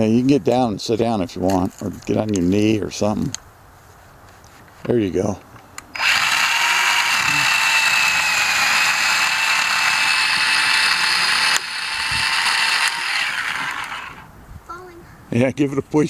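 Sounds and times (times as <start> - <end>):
chainsaw cutting tree trunk: 6.0 - 14.3.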